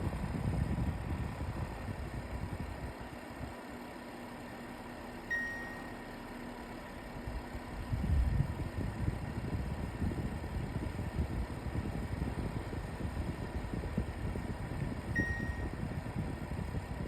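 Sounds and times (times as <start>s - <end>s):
fan running with vibration rumble: 0.0s - 17.0s
short beep: 5.3s - 6.1s, 15.2s - 15.7s.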